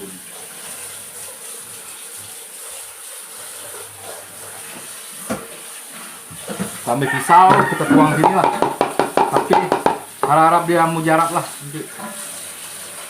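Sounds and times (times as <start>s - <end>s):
sharp knock: 7.5s - 10.5s.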